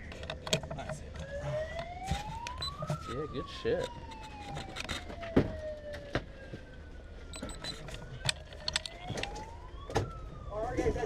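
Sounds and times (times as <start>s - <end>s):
siren wailing: 0.1s - 11.0s
sharp clicks and knocks: 7.3s - 10.1s.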